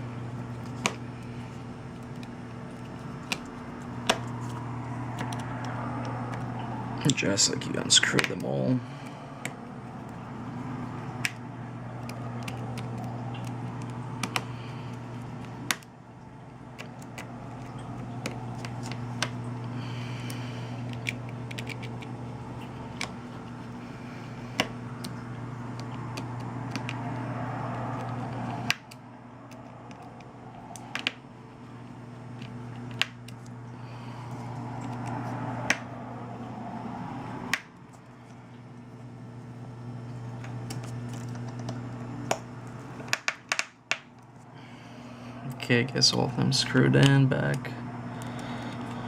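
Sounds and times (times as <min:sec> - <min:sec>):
steady low hum: 0:00.0 - 0:49.0
screwdriver clicks and taps: 0:25.8 - 0:27.0.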